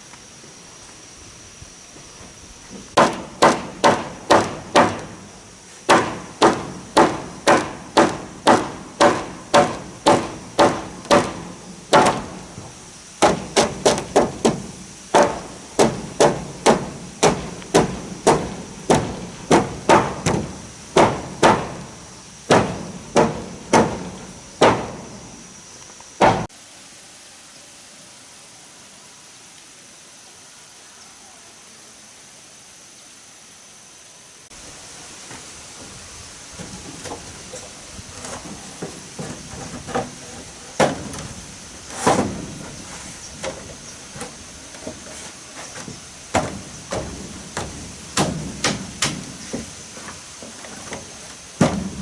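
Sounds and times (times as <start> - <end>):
hammer striking wood: 3.0 - 5.2, 5.9 - 12.4, 13.2 - 21.9, 22.5 - 25.1, 26.2 - 26.5, 40.8 - 41.3, 46.3 - 49.7, 51.6 - 52.0.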